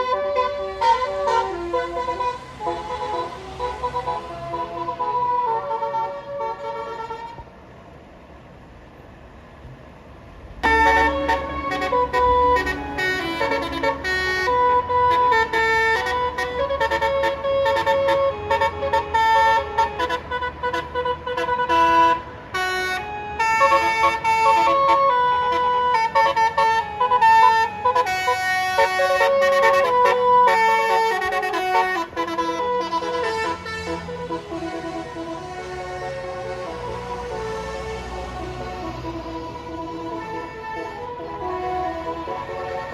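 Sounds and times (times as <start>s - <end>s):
multi-tone musical bus horn: 0.0s - 7.7s, 10.6s - 42.9s.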